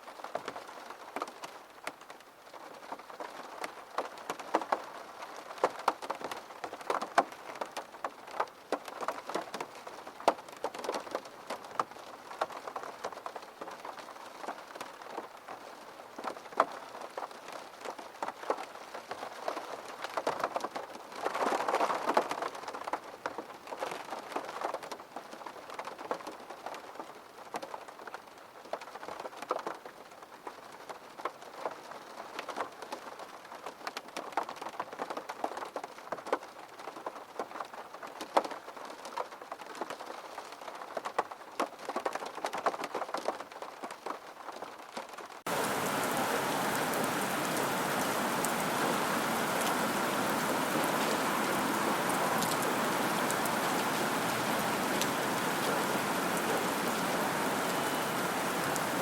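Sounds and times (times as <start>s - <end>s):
rain drops on hard surface: 0.0s - 59.0s.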